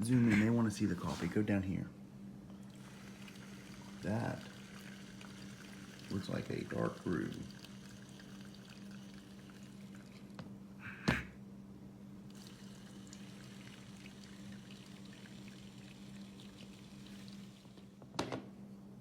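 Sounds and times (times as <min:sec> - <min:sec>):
coffee dripping into cup: 0:02.6 - 0:10.4, 0:12.3 - 0:18.0.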